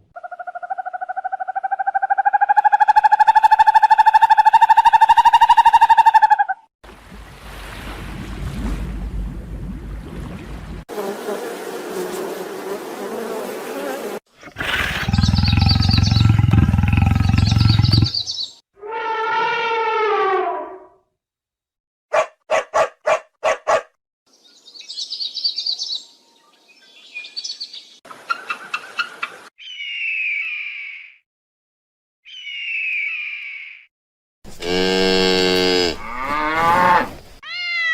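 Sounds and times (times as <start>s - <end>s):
animal calls: 0.1s - 6.6s, 14.4s - 19.8s
chirping: 14.4s - 18.6s.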